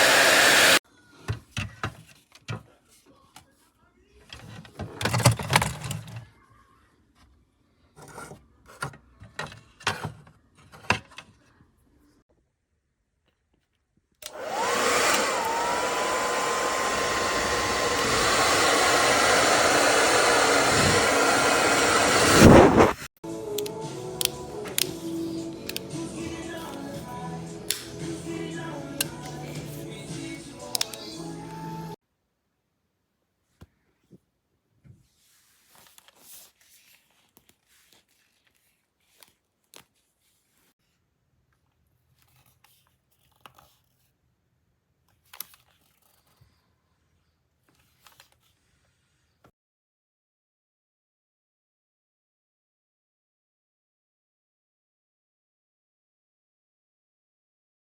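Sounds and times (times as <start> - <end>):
hair dryer motor whine: 0.0 - 0.8, 14.2 - 23.0
rush of air: 22.0 - 23.1.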